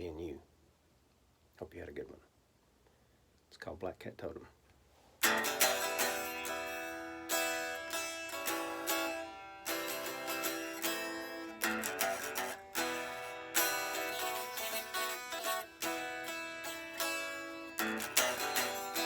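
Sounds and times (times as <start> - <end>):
acoustic guitar chords ringing: 5.2 - 19.0.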